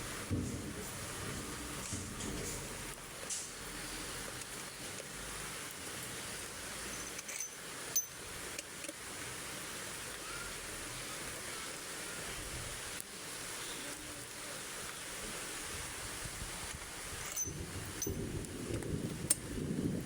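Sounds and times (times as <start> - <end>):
steady hissing noise: 0.0 - 20.0.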